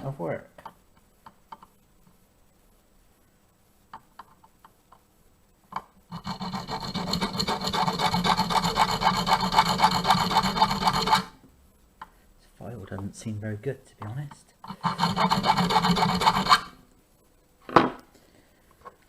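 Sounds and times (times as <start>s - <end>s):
hand file rasping on key: 6.1s - 11.4s, 14.6s - 16.7s.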